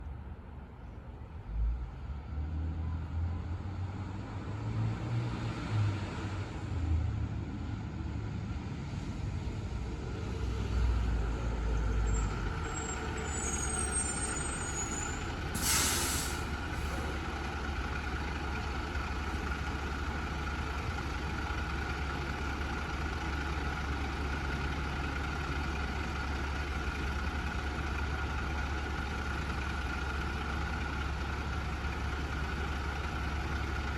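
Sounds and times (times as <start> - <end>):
diesel bus engine idling: 9.4 - 33.9
air brake hiss: 14.0 - 17.1.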